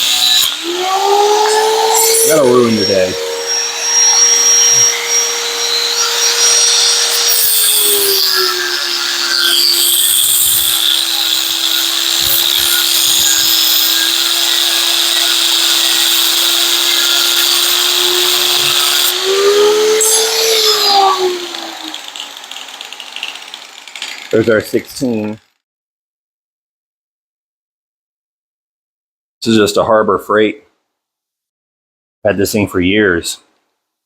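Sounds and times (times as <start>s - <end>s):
angle grinder cutting metal: 0.0s - 25.5s.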